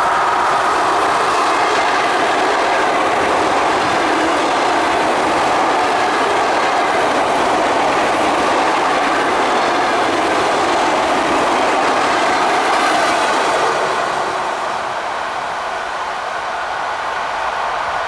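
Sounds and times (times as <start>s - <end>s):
train wheels rushing on rails: 0.0s - 18.0s.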